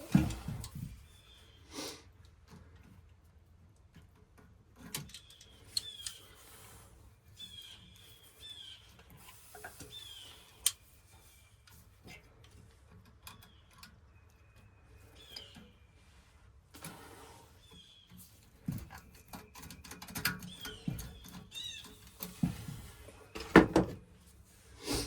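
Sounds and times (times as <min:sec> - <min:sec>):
hand tools clicking and knocking: 0:18.4 - 0:24.0.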